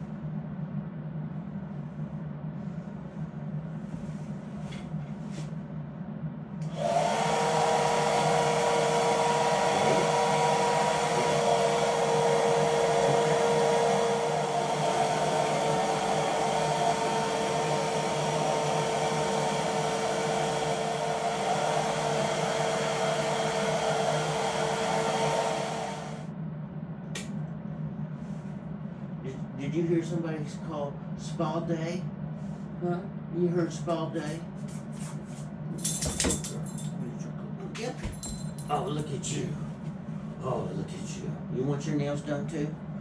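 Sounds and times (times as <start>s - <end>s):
blow dryer running: 6.6s - 26.3s.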